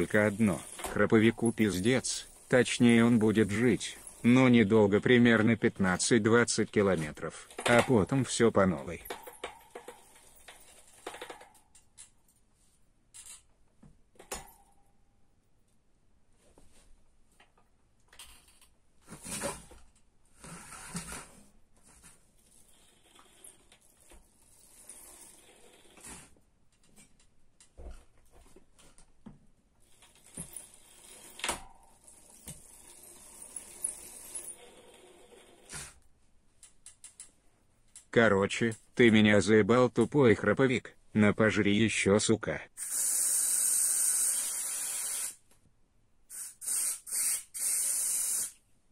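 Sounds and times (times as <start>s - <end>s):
metallic clicks and taps: 36.6s - 38.1s
bicycle freewheel ratchet clicking: 42.8s - 45.4s, 46.3s - 48.6s.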